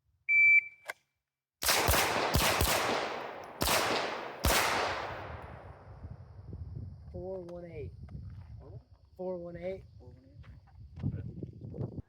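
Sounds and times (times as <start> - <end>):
shot timer beep: 0.3 - 0.8
handgun shots: 1.6 - 5.4.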